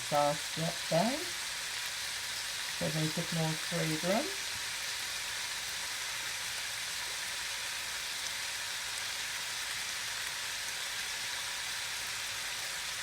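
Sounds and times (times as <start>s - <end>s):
food sizzling in a frying pan: 0.0s - 13.0s.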